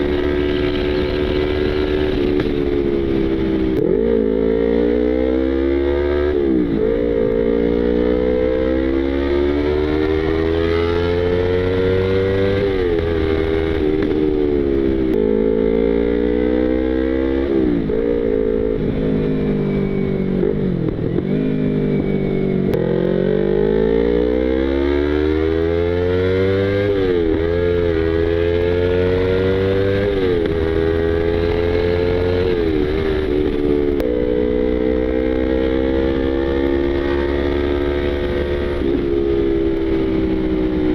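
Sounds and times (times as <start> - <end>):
motorcycle engine shifting gears: 0.0 - 40.9.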